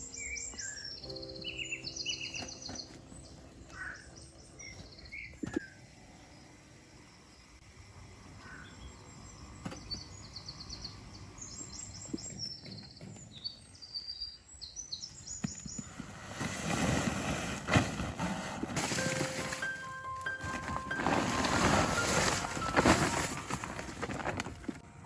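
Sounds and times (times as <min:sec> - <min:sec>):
small birds trilling: 0:00.0 - 0:06.6, 0:08.4 - 0:16.0
rustling: 0:15.8 - 0:24.8.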